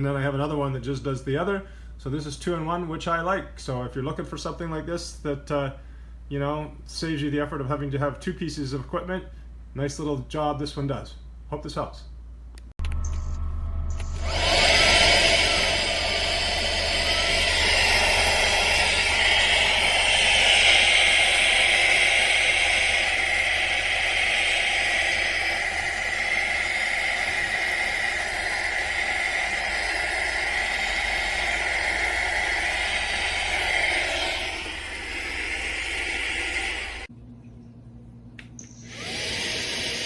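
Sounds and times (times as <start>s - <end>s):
handheld vacuum blower whining: 12.9s - 37.1s, 38.8s - 40.0s.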